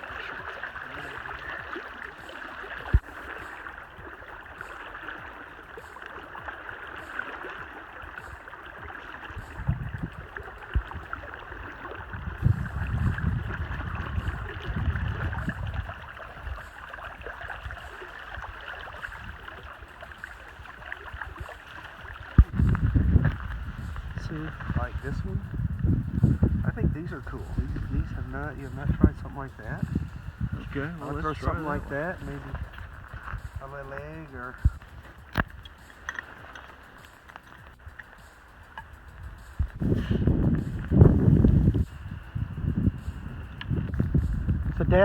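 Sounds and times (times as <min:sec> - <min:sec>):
river water rushing: 0:00.0 - 0:25.1, 0:31.1 - 0:39.8
low rumble: 0:09.4 - 0:45.0.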